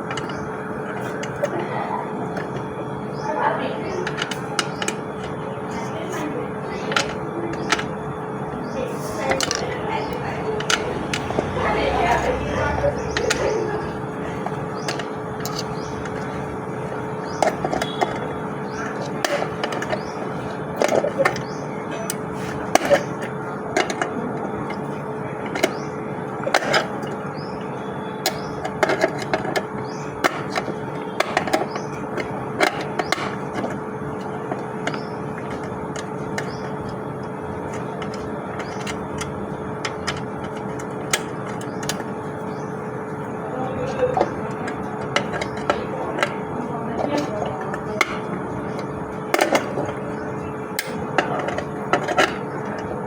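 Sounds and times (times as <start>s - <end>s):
steady hum: 0.0s - 28.2s.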